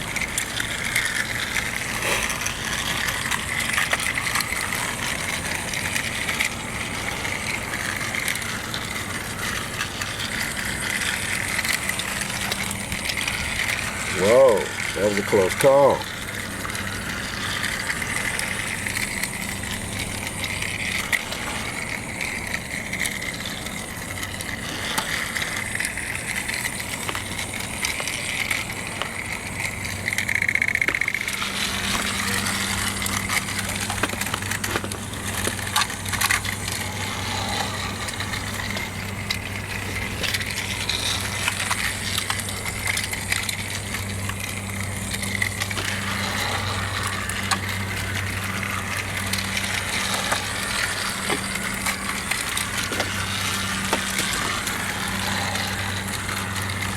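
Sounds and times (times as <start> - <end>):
toy train motors whirring: 0.0 - 56.9
wheels clicking and rattling on track: 0.0 - 56.9.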